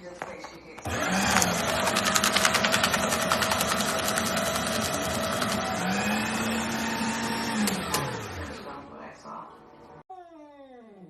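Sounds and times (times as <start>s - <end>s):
small motorized machine running: 0.9s - 8.8s.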